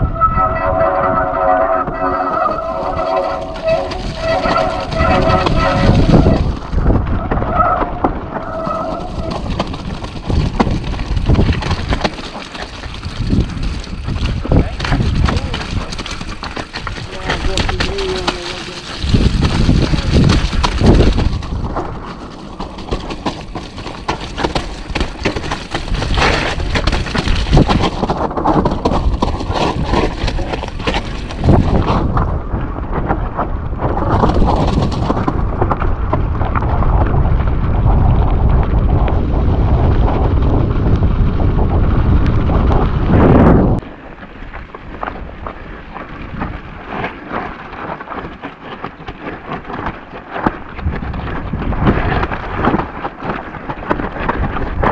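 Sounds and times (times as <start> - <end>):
bike rattling over rough ground: 0.0 - 54.9
wind buffeting microphone: 0.0 - 54.9.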